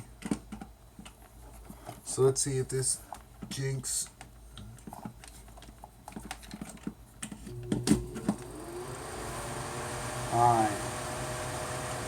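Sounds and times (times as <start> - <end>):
vent fan motor whirring: 7.5 - 12.0.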